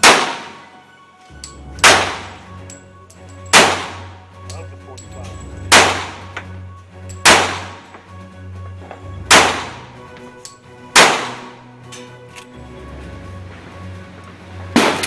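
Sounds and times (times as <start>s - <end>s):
pistol shots with ringing tail: 0.0s - 6.4s, 7.1s - 7.9s, 9.2s - 10.0s, 10.9s - 11.6s, 14.8s - 15.0s.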